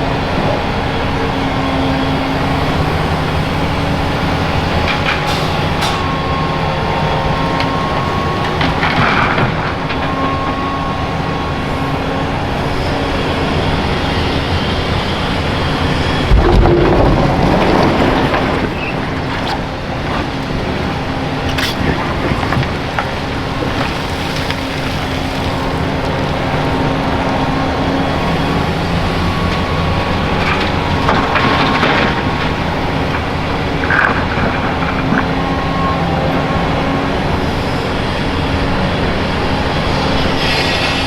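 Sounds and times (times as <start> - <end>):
excavator diesel engine running: 0.0 - 41.0
rubble crashing: 15.6 - 28.0.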